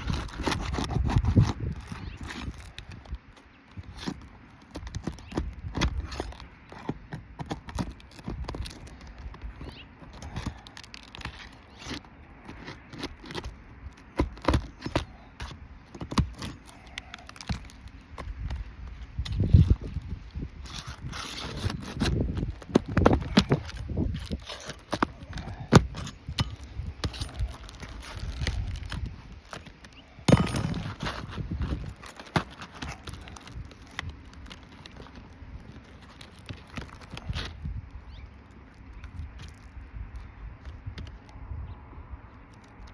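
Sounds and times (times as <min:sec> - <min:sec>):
shingles cracking and clicking: 0:00.0 - 0:37.5
scraping under asphalt shingles: 0:00.0 - 0:41.4.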